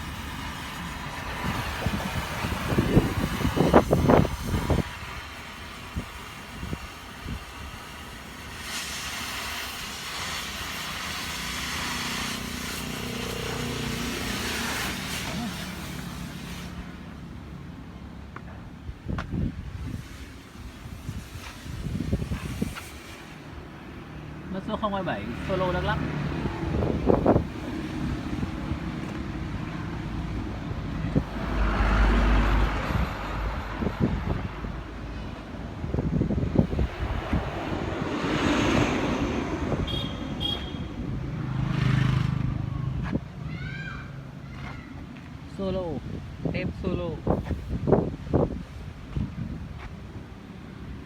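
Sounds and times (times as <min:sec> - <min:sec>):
wind on microphone: 0:00.0 - 0:07.9, 0:18.8 - 0:23.6, 0:26.0 - 0:43.4, 0:45.7 - 0:51.0
steady hiss: 0:00.0 - 0:17.4, 0:19.7 - 0:25.6
road traffic: 0:00.0 - 0:51.0
vehicle engine rumbling: 0:12.8 - 0:43.5.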